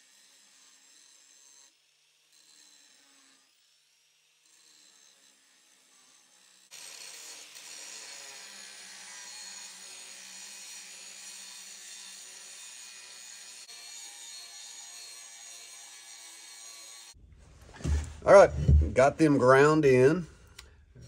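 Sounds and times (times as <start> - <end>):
grinding wheel on steel: 4.4 - 5.4.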